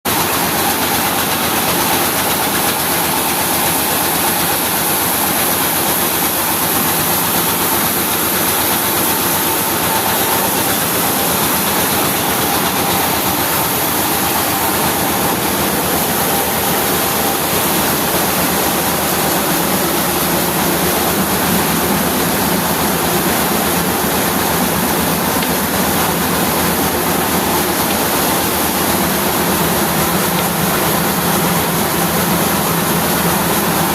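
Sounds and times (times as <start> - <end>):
rice milling machine running: 0.1 - 33.9.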